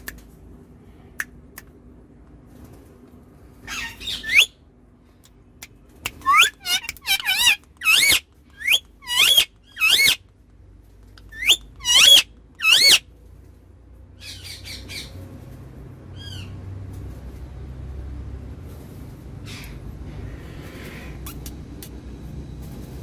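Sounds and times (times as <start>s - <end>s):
low car rumble: 0.0s - 23.0s
parrot squawking: 3.6s - 4.6s, 6.2s - 10.2s, 11.2s - 13.0s.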